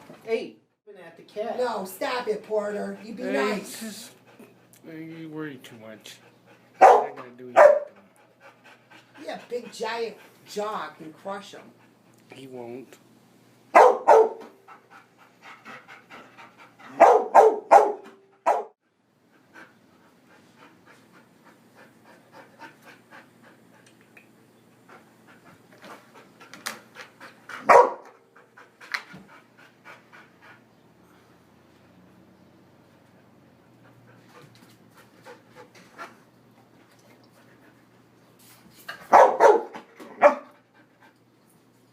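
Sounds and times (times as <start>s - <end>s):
dog panting: 1.6s - 12.2s, 14.1s - 18.6s, 19.2s - 24.0s, 24.6s - 32.0s, 32.8s - 38.2s, 38.9s - 41.6s
large dog barking: 6.8s - 8.0s, 13.8s - 14.4s, 16.9s - 18.8s, 27.6s - 28.2s, 39.1s - 40.5s.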